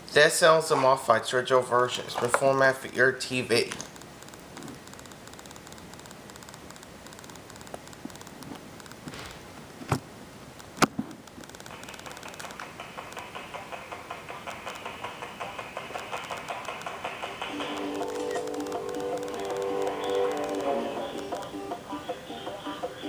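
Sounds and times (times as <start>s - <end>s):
tape hiss: 0.0s - 23.0s
sharp clicks: 3.7s - 9.0s, 10.6s - 21.5s
rhythmic ticking: 3.9s - 9.0s, 11.4s - 23.0s.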